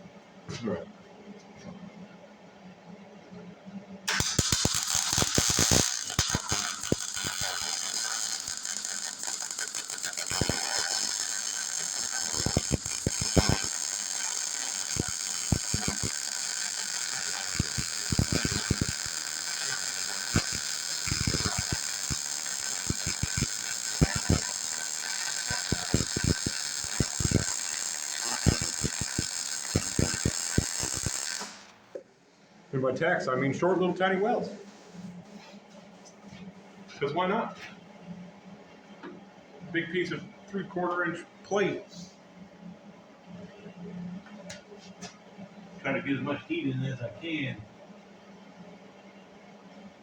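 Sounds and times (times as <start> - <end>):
welding arc crackling: 4.1 - 32.0.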